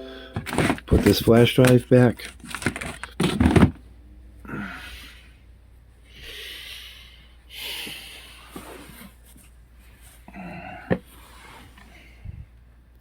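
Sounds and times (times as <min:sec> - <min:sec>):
person breathing: 0:06.1 - 0:08.5.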